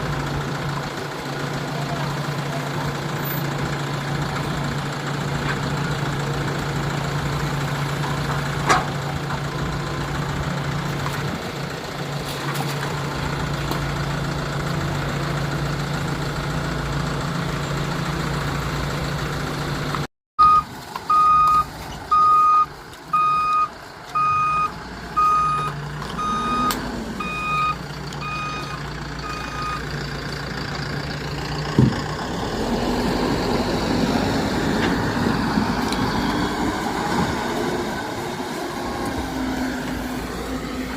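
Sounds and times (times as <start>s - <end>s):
diesel engine running: 0.0s - 40.9s
reversing alarm beeping: 20.4s - 29.9s.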